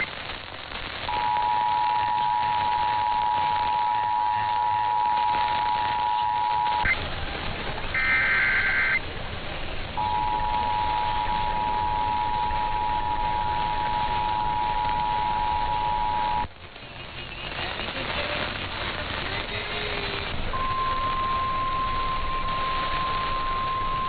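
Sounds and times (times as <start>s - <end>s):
radio hiss: 0.0s - 24.0s
screech of digital header data: 1.1s - 7.0s, 8.0s - 9.0s
two-tone attention signal: 1.1s - 7.0s, 8.0s - 9.0s, 10.0s - 16.5s, 20.6s - 24.0s.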